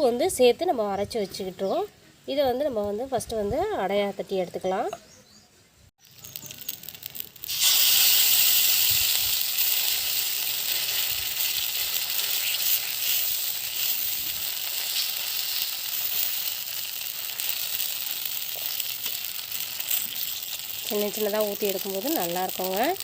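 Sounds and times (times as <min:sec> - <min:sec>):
batter sizzling on a hot pan: 0:06.0 - 0:23.0.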